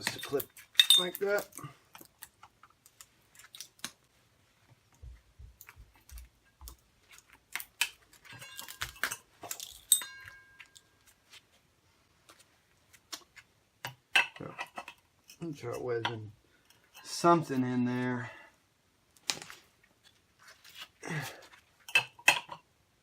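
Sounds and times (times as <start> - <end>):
metal clinking: 0.0 - 1.7, 8.2 - 10.9.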